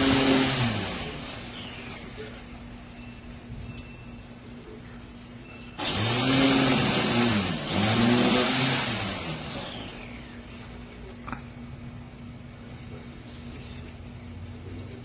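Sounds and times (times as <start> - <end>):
electric string trimmer motor: 0.0 - 2.7, 5.8 - 10.9.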